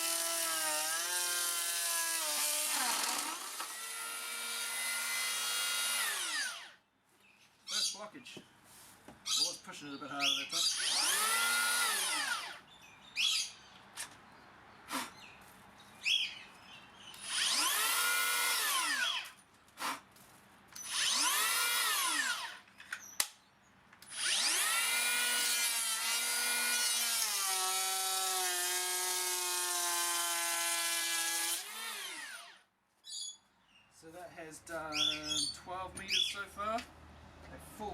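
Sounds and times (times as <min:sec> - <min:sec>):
planer blades cutting wood: 0:00.0 - 0:06.7, 0:10.7 - 0:12.6, 0:17.2 - 0:19.2, 0:20.8 - 0:22.6, 0:24.1 - 0:32.6
electric planer motor: 0:24.2 - 0:32.6.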